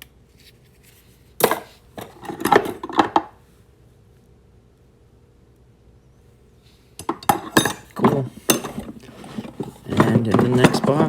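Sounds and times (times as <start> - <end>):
metal tools clattering: 1.4 - 3.3, 7.0 - 11.0.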